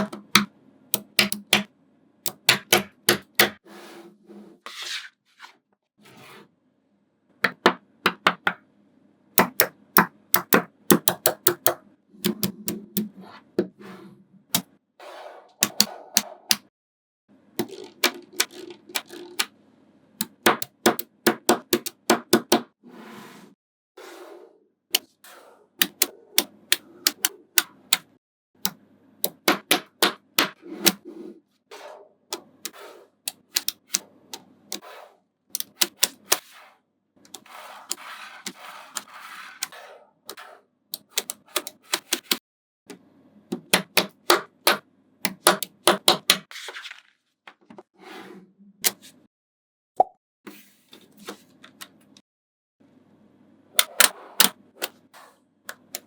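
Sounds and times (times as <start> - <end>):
magnetic balls clicking together: 17.6 - 19.5
magnetic balls rattling: 17.6 - 19.5.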